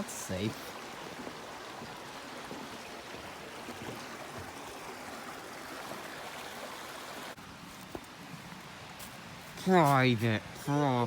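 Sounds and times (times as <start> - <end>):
stream flowing: 0.0 - 11.0.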